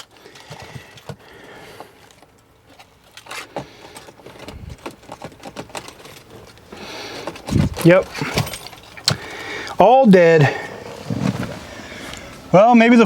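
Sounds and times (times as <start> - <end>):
keys jingling: 7.4 - 9.1.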